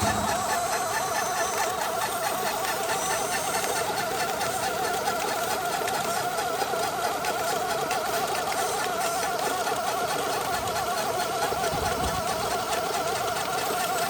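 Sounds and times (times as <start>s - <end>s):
warbling machine whine: 0.0s - 1.3s.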